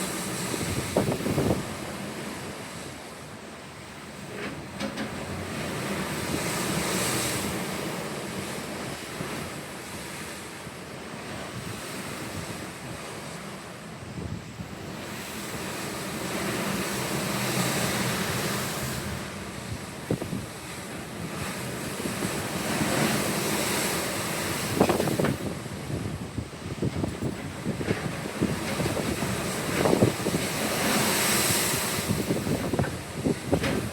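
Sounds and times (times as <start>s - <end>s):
wind buffeting microphone: 0.0s - 3.0s, 11.2s - 33.9s
ocean waves washing: 0.0s - 33.9s.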